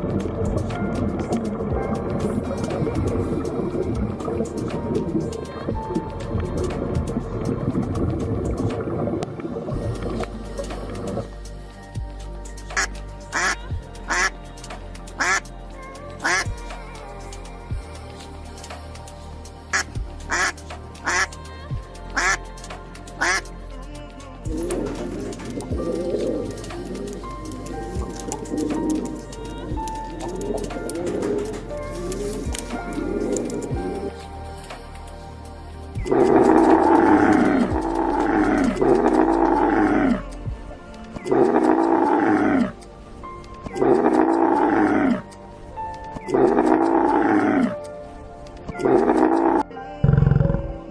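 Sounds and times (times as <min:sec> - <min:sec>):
duck quacking: 0:12.8 - 0:14.3, 0:15.2 - 0:15.4, 0:16.2 - 0:16.4, 0:19.8 - 0:21.3, 0:22.2 - 0:22.4, 0:23.2 - 0:23.4.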